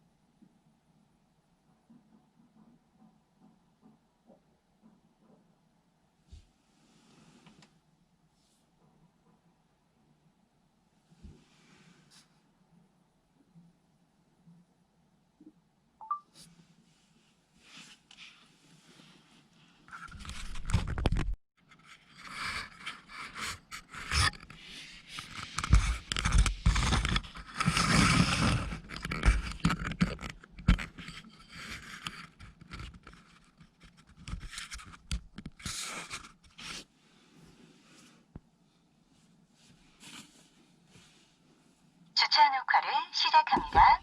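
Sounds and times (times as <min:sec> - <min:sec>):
scraping and rubbing: 0:16.8 - 0:38.3.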